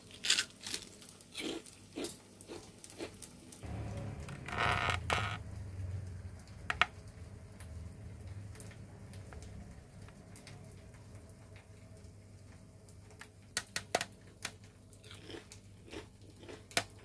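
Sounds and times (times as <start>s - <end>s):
low hum: 3.6s - 10.0s.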